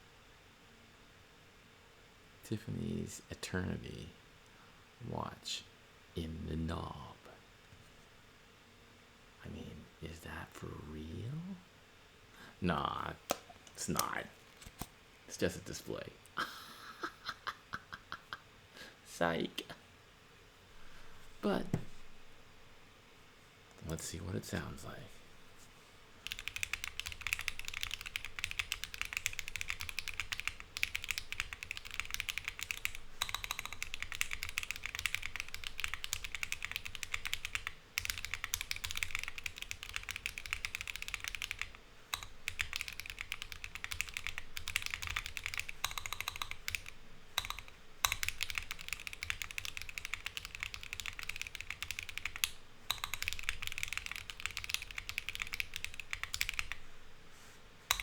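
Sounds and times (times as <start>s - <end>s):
mechanical keyboard typing: 26.2s - 56.8s.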